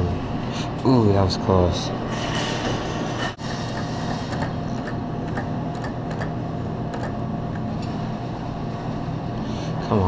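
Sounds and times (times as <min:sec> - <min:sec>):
low machine hum: 0:00.0 - 0:10.0.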